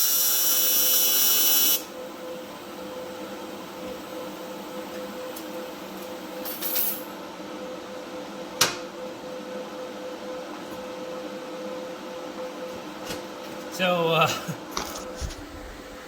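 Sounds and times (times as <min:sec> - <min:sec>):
welding arc buzzing: 0:00.0 - 0:02.0.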